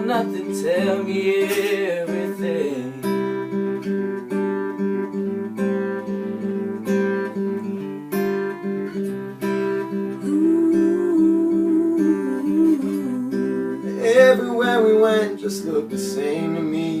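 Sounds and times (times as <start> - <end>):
acoustic guitar strumming chords: 0.0 - 17.0
wavering held melody line: 9.8 - 16.4.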